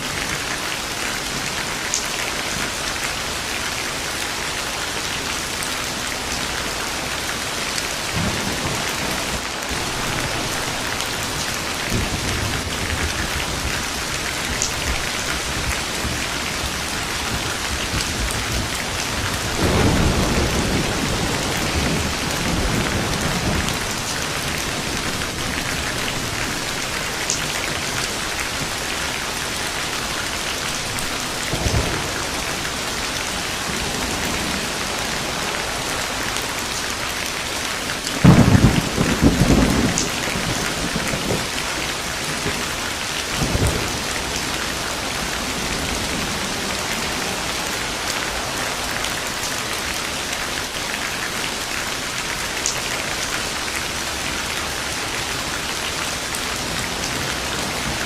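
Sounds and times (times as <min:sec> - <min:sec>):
steady rain: 0:00.0 - 0:58.0
thunder rumbling: 0:08.0 - 0:50.3.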